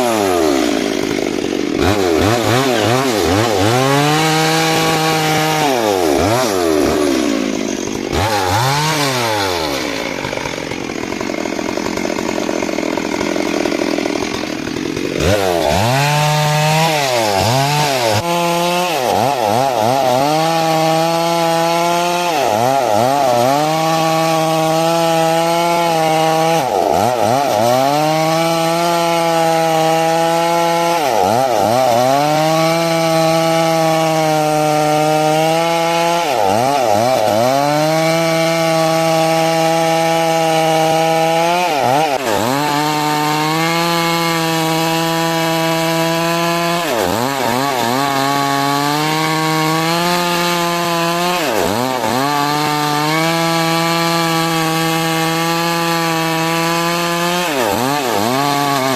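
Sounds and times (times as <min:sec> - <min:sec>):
chainsaw cutting log: 0:00.0 - 0:58.9.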